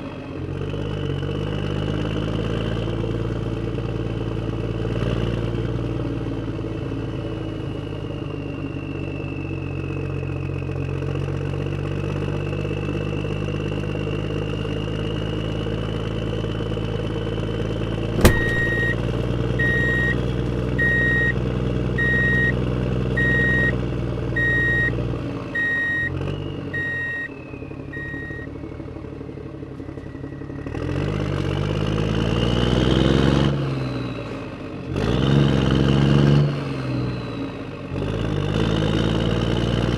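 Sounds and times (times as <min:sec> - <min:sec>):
truck engine running: 0:15.8 - 0:31.8
sharp click: 0:18.1 - 0:20.1
reversing beeper: 0:18.2 - 0:21.4, 0:22.0 - 0:22.6, 0:23.2 - 0:23.8, 0:24.4 - 0:28.6.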